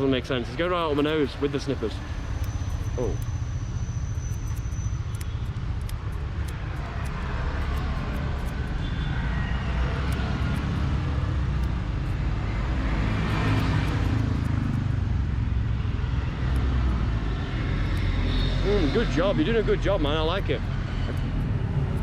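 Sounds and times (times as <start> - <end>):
low traffic rumble: 0.0 - 22.0
vehicle passing by: 5.9 - 22.0.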